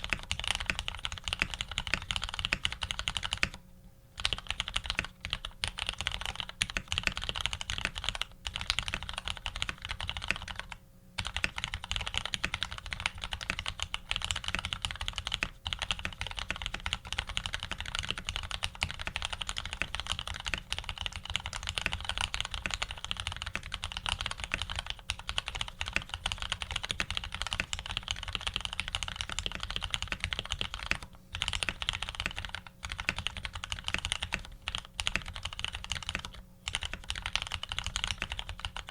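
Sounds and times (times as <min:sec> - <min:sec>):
fast typing on mechanical keyboard: 0:00.0 - 0:03.6, 0:04.2 - 0:38.9.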